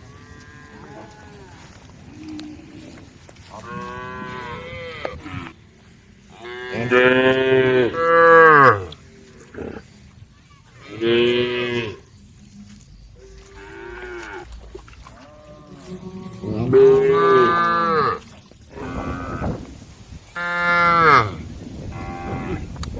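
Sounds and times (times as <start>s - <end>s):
cattle mooing: 0.0s - 5.5s, 6.3s - 9.8s, 13.2s - 19.6s, 20.4s - 22.7s.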